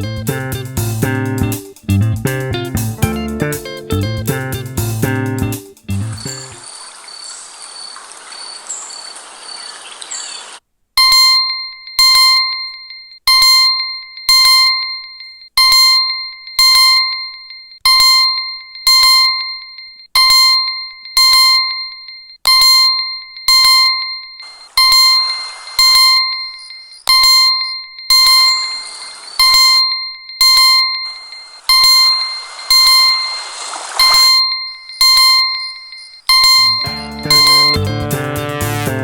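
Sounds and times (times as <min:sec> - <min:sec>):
hissy tone with faint chirps: 0:06.2 - 0:10.6, 0:24.4 - 0:29.7, 0:31.0 - 0:34.2
loud bell-like phone ring: 0:11.0 - 0:38.0.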